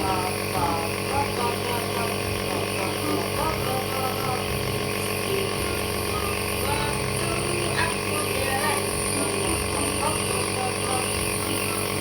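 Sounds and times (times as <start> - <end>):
nebulizer motor humming: 0.0 - 12.0.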